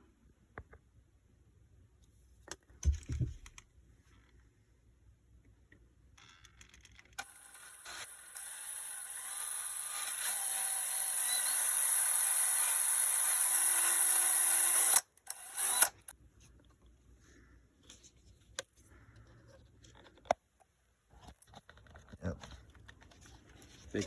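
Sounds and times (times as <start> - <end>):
small electric motor whirring: 7.2 - 16.2.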